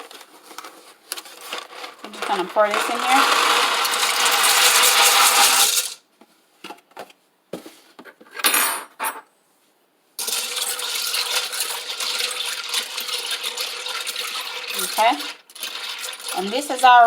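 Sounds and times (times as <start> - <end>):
dry pasta pouring into a pot: 1.3 - 6.0, 10.2 - 17.0.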